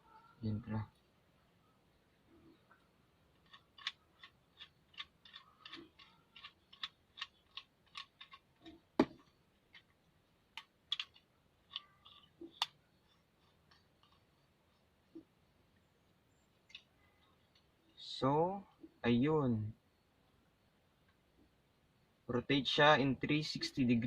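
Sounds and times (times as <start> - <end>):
small plastic clicks: 3.3 - 14.4, 16.6 - 17.7.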